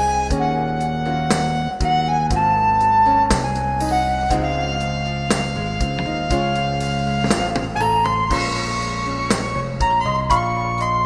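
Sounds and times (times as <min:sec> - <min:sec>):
instrumental background music: 0:00.0 - 0:11.0
percussion hits: 0:05.3 - 0:10.0.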